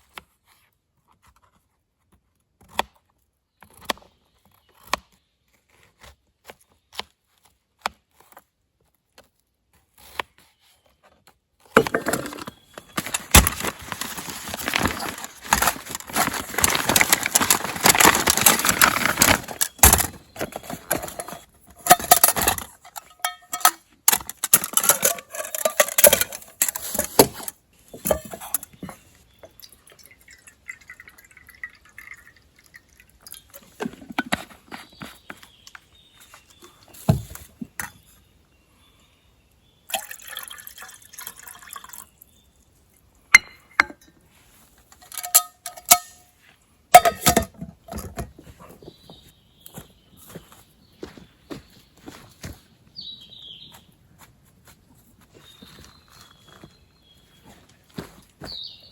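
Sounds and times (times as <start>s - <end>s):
clinks and knocks of cooking: 11.8s - 29.6s, 43.3s - 44.1s, 45.0s - 46.3s, 46.9s - 48.3s.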